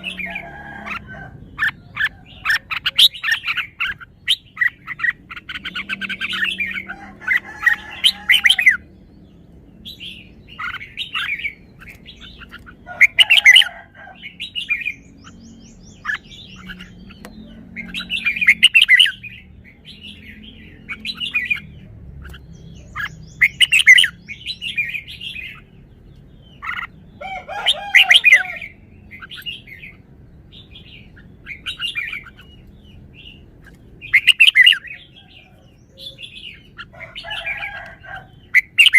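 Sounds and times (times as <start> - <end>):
bird singing warbling phrases: 0.0 - 38.9
soft bird chirps: 0.0 - 38.9.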